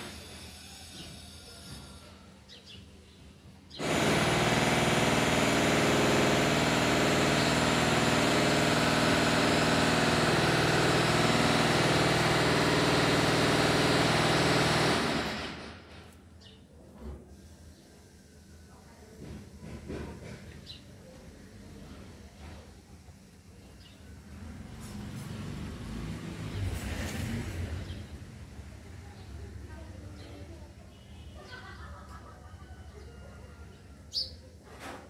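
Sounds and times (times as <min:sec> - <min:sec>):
loud mechanical drone: 0:03.8 - 0:15.8.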